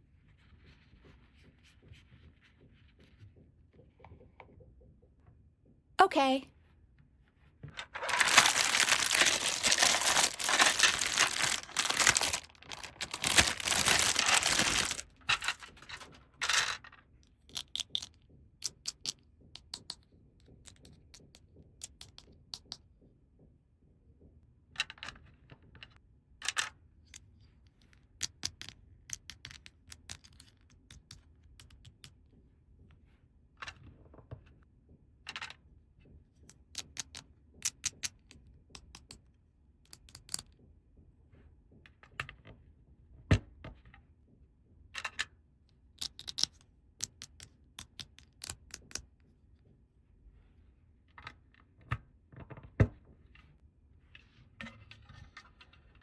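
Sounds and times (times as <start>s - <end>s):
plastic packaging tearing and crinkling: 7.8s - 16.1s
plastic toy pieces clicking: 8.0s - 16.8s.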